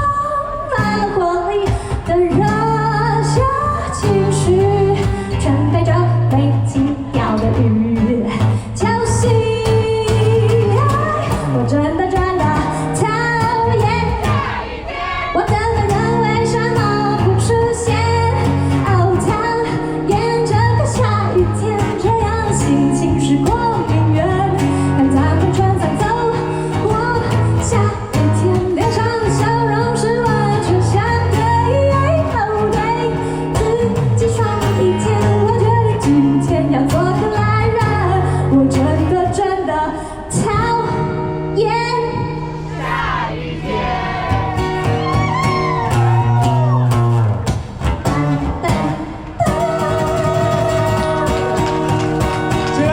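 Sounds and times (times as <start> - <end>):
woman singing: 0.0 - 42.6, 47.9 - 52.9
pop band playing: 41.6 - 52.9.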